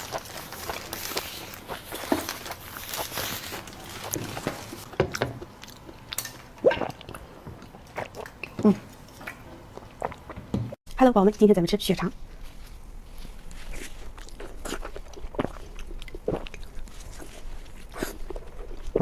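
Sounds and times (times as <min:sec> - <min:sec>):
biting and chewing: 0:00.0 - 0:10.4, 0:13.5 - 0:19.0
mouth or throat noises: 0:06.6 - 0:07.3, 0:08.0 - 0:08.9.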